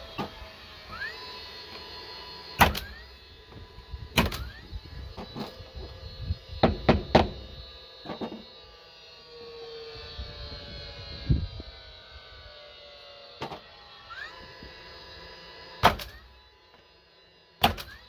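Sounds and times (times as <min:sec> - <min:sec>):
rising motor whine: 0:00.0 - 0:18.0
nail gun shots: 0:02.6 - 0:03.1, 0:04.2 - 0:04.6, 0:06.6 - 0:07.5, 0:15.8 - 0:16.3, 0:17.6 - 0:18.0.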